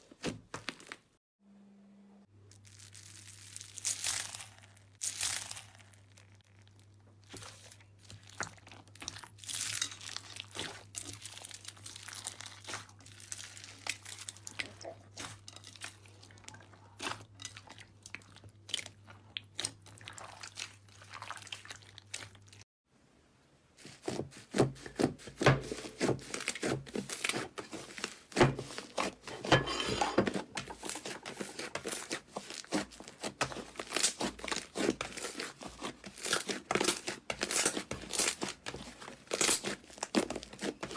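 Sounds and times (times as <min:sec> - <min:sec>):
slime crackling and popping: 0:02.5 - 0:16.4, 0:30.7 - 0:40.9.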